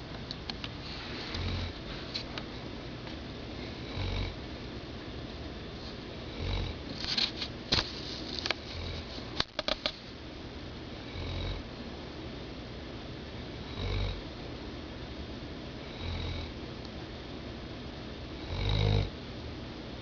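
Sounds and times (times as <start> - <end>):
person snoring: 1.3 - 1.8, 3.7 - 4.4, 6.3 - 6.8, 11.0 - 11.6, 13.7 - 14.2, 15.9 - 16.5, 18.4 - 19.1.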